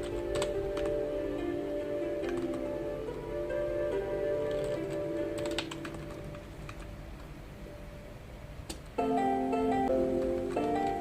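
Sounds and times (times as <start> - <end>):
computer keyboard keystrokes: 0.0 - 1.0, 2.2 - 2.6, 4.5 - 7.3, 10.2 - 11.0
soft background music: 0.0 - 11.0.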